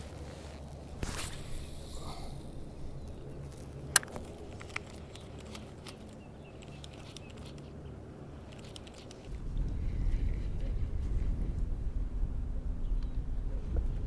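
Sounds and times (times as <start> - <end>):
low steady rumble: 9.3 - 14.0.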